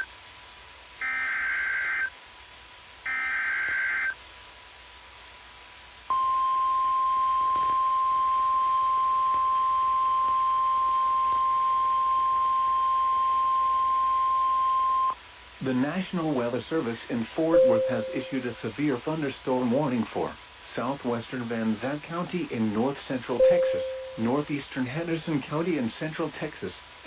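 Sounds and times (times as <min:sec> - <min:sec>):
steady loud attention tone: 0:17.5 - 0:18.7, 0:23.4 - 0:24.6.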